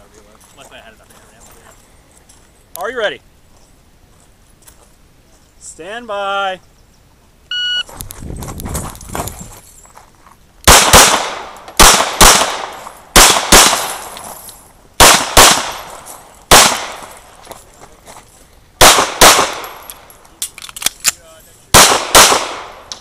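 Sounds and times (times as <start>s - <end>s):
pistol shots with echo: 10.7s - 14.1s, 15.0s - 17.1s, 18.8s - 19.9s, 21.7s - 23.0s.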